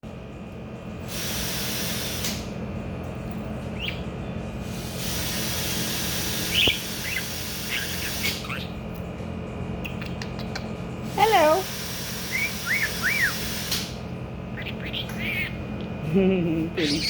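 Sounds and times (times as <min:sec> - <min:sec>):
budgerigar chirping: 0:03.8 - 0:04.1, 0:05.4 - 0:08.8, 0:11.6 - 0:13.8, 0:14.4 - 0:15.7, 0:16.8 - 0:17.0.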